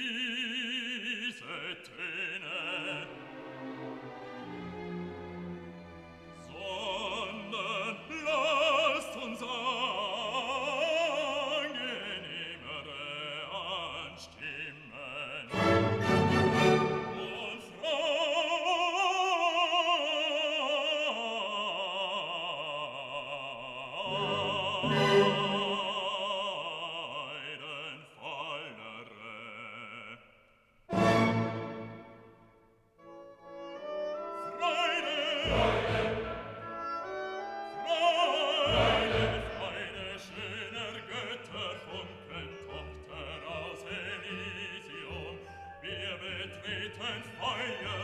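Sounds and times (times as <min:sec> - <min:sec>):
operatic voice singing: 0:00.0 - 0:04.2, 0:06.4 - 0:32.2, 0:34.2 - 0:48.0
orchestral accompaniment: 0:02.6 - 0:12.8, 0:15.5 - 0:18.0, 0:24.0 - 0:26.5, 0:30.9 - 0:48.0.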